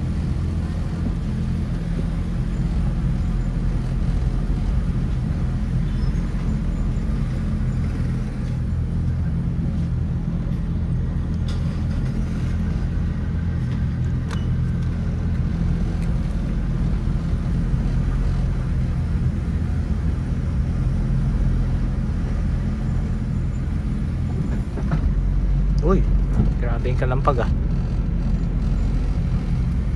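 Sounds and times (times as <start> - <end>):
car engine and road rumble: 0.0 - 29.9.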